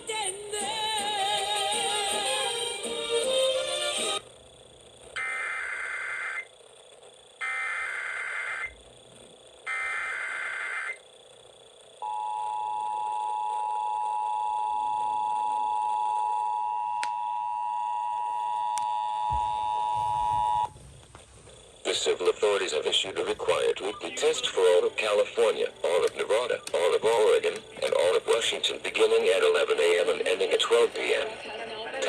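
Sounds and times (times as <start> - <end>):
two-tone attention signal: 12.0 - 20.7.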